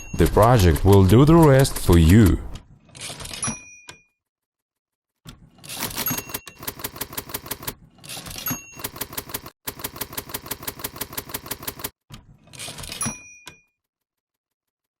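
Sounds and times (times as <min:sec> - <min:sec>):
typewriter bell ding: 0:00.0 - 0:02.2, 0:05.7 - 0:11.9, 0:12.9 - 0:13.7
typewriter carriage return: 0:00.1 - 0:03.7, 0:05.6 - 0:11.9, 0:12.5 - 0:13.3
typewriter keystrokes: 0:00.2 - 0:03.4, 0:05.7 - 0:07.7, 0:08.3 - 0:11.9.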